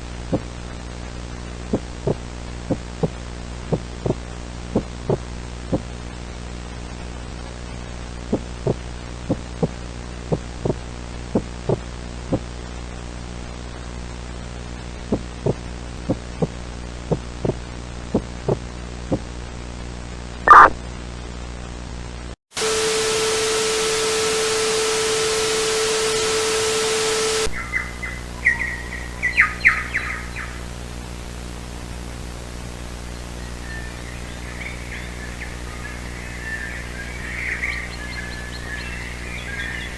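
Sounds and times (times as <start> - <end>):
loud static with steady tone: 0.0 - 39.9
glitchy electronic chirps: 20.5 - 20.8, 27.3 - 39.9
low droning hum: 27.4 - 39.9.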